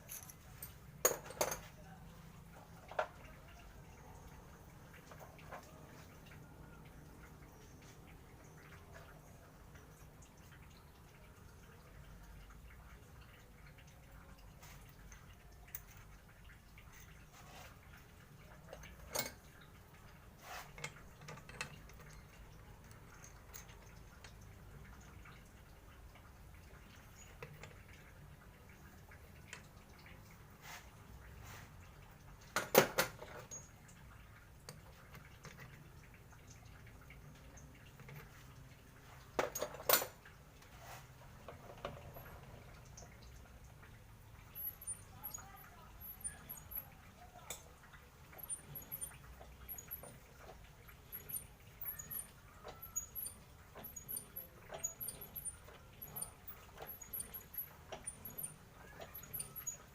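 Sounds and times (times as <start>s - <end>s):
metal tools clinking and clattering: 0.0s - 1.8s
light clicks and clinks: 0.0s - 12.6s, 13.2s - 25.5s.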